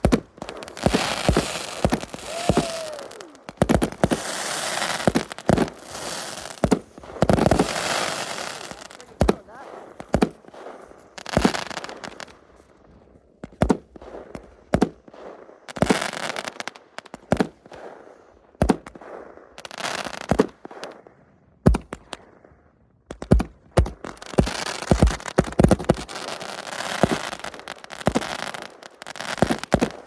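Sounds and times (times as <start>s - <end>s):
fireworks banging: 0.0s - 12.5s, 23.1s - 30.0s
fireworks popping: 0.0s - 22.5s, 23.1s - 30.0s.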